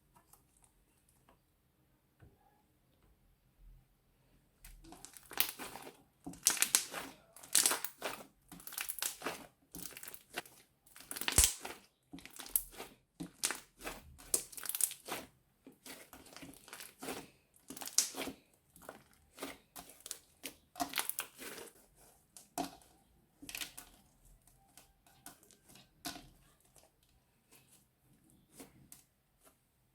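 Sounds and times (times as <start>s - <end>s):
plastic bag crinkling: 4.8s - 21.6s
slime being squeezed: 6.4s - 15.2s, 15.8s - 18.3s.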